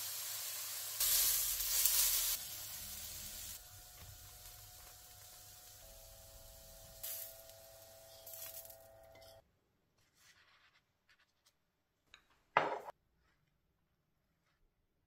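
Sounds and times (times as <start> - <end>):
food sizzling in a pan: 0.0 - 9.4
kitchen handling sounds: 12.1 - 12.9.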